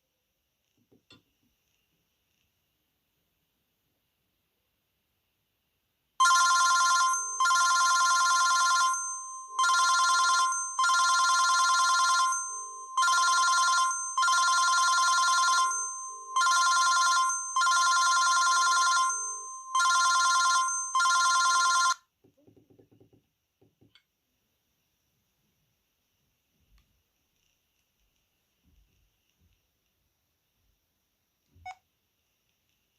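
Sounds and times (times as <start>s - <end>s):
trilling phone ringtone: 6.2s - 22.1s.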